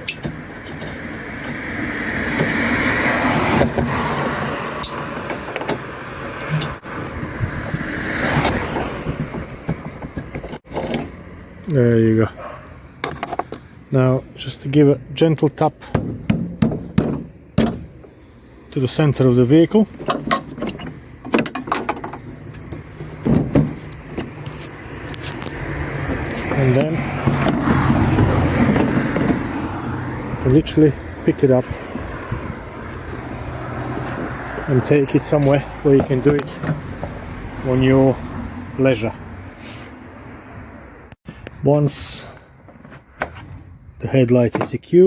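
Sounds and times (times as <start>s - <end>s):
vehicle passing by: 0.8s - 9.6s, 22.3s - 41.2s
plastic knocks and clatter: 8.4s - 11.1s.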